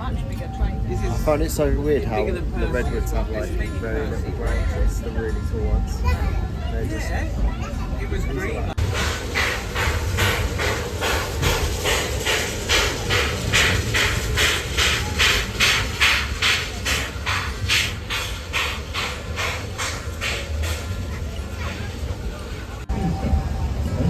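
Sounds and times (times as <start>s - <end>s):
low rumble of train: 0.0s - 24.0s
steam locomotive exhaust chuffing: 7.3s - 24.0s.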